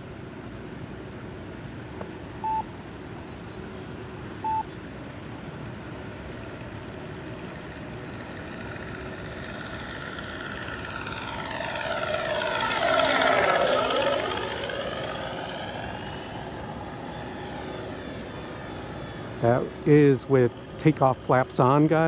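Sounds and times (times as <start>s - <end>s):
model plane flying past: 5.0s - 22.0s.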